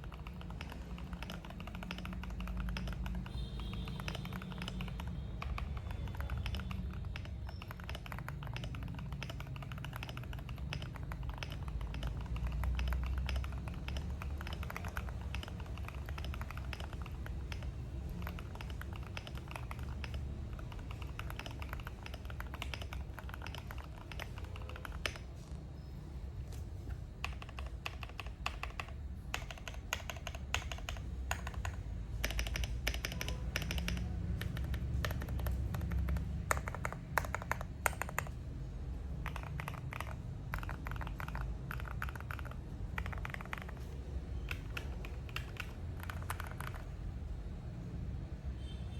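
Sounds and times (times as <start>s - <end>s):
mechanical keyboard typing: 0.0s - 25.7s, 26.4s - 47.4s.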